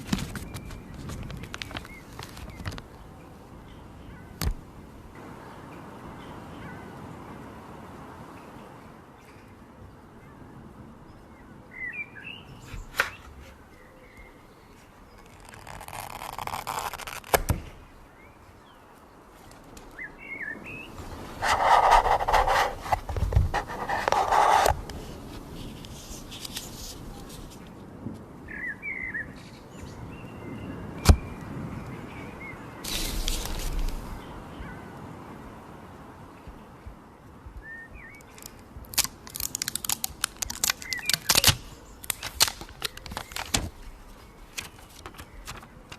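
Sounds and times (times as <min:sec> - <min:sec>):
rustling: 0:00.0 - 0:03.0, 0:14.6 - 0:17.9, 0:20.9 - 0:27.8, 0:32.8 - 0:34.2, 0:38.3 - 0:45.9.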